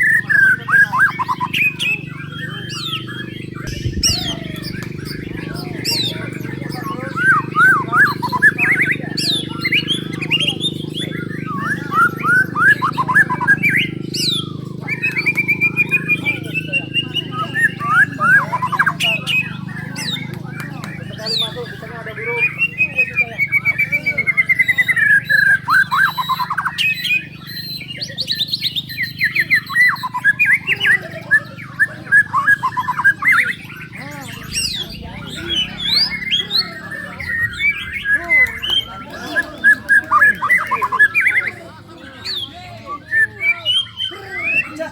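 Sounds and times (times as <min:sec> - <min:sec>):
steady low hum: 0:00.0 - 0:42.0
low steady hum: 0:03.6 - 0:07.1
bird singing loud varied whistles: 0:06.8 - 0:44.8.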